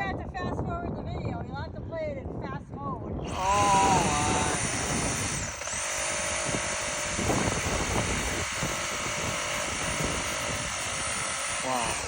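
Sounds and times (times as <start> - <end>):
electric power saw cutting: 3.2 - 12.0.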